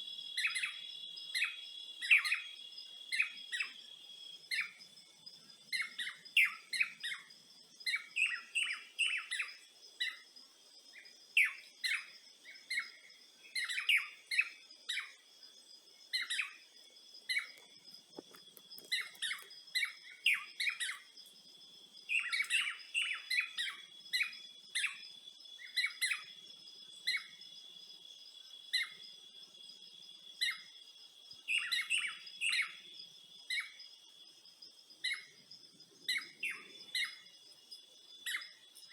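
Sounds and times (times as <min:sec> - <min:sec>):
birds chirping: 0:16.0 - 0:21.2, 0:22.0 - 0:25.0, 0:34.9 - 0:38.9.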